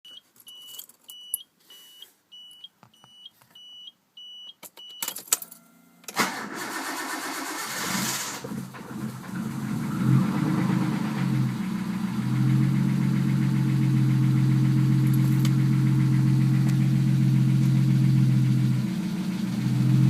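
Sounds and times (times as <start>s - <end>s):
engine starter cranking: 6.1s - 9.8s
car engine running with knock: 8.9s - 18.1s.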